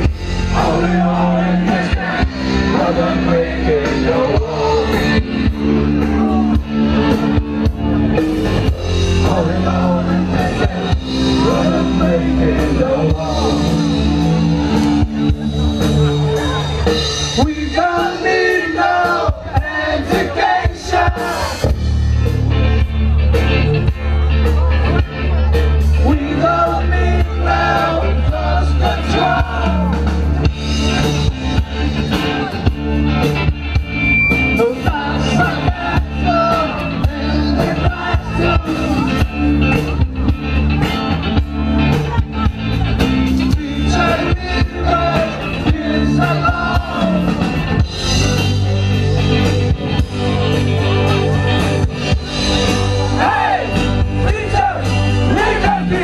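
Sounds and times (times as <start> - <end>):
person singing: 0.0 - 7.4, 9.0 - 15.2, 43.5 - 47.5
bass guitar: 0.0 - 56.0
electric guitar: 0.0 - 56.0
steady drum beat: 0.0 - 56.0.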